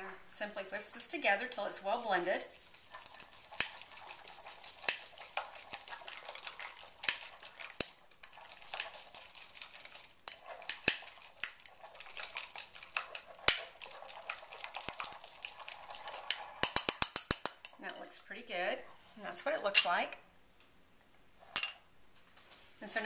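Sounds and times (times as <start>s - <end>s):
whisk clicking and scraping: 0.3s - 18.2s
whisk knocking on rim: 0.7s - 17.7s.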